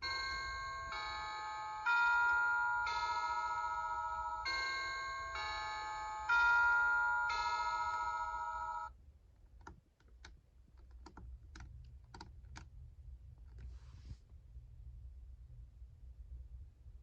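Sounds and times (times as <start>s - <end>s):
toy electronic chime tune: 0.0s - 8.9s.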